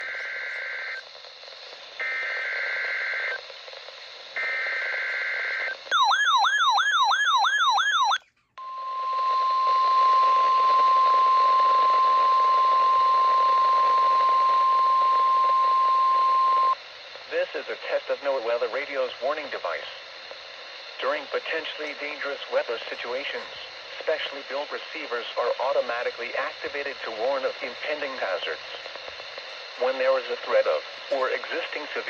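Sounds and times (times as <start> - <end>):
faint radio static hiss: 0.0 - 32.0
steady warning alarm tone: 4.4 - 16.8.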